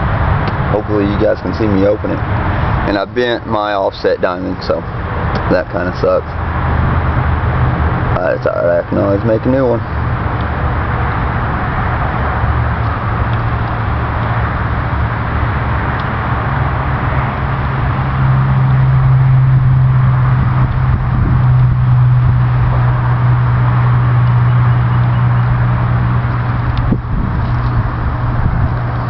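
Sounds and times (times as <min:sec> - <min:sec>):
low mechanical hum: 0:00.0 - 0:29.0.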